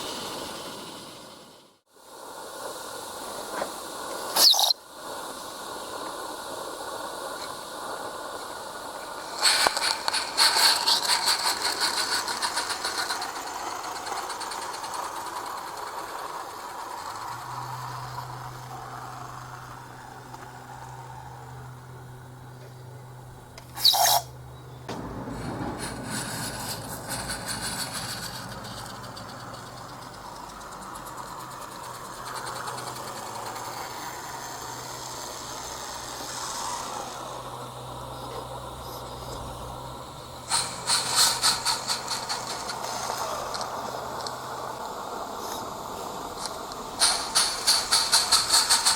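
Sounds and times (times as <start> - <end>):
steady low hum: 2.1 - 48.9
model train rattling on track: 2.3 - 48.9
fast clicking and rattling: 9.2 - 19.4, 24.9 - 36.3, 40.4 - 45.1, 45.8 - 48.9.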